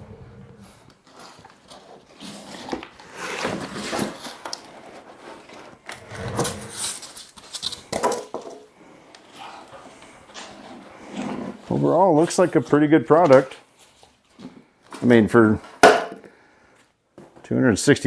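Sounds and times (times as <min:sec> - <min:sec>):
plastic parts knocking: 0:15.7 - 0:16.3.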